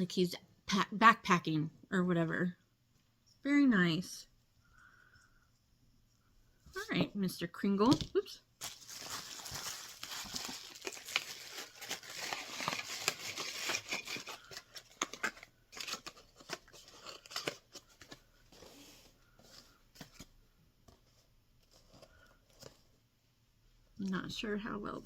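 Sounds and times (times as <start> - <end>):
packaging rustling and crinkling: 8.6 - 23.0.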